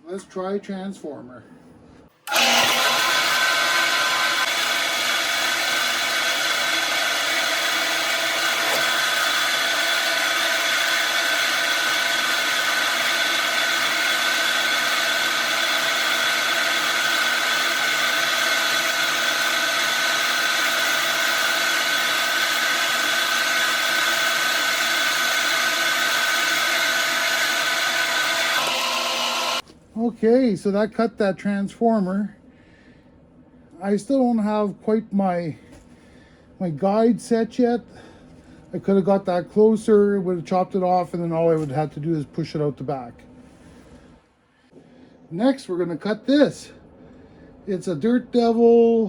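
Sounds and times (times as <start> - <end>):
band saw cutting metal: 2.2 - 29.6.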